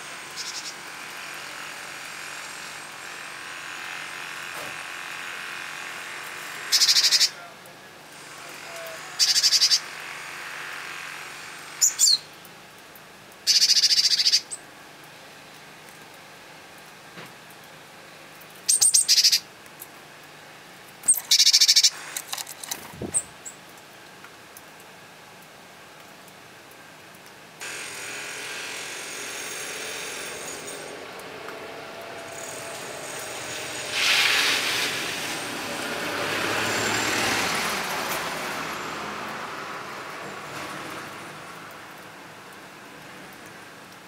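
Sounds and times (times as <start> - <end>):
small birds chattering: 0.3 - 0.8, 6.7 - 7.4, 9.2 - 9.8, 13.5 - 14.6, 18.7 - 19.4, 21.1 - 22.0
road vehicle passing by: 30.8 - 42.8
short loud hiss: 33.3 - 35.4.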